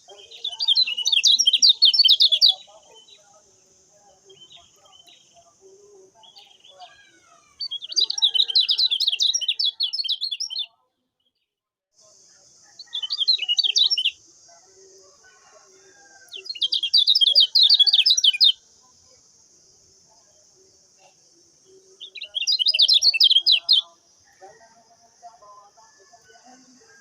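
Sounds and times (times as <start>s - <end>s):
bird chattering twitter: 0.0s - 3.2s, 6.2s - 10.7s, 12.8s - 14.2s, 16.3s - 18.6s, 21.7s - 24.0s.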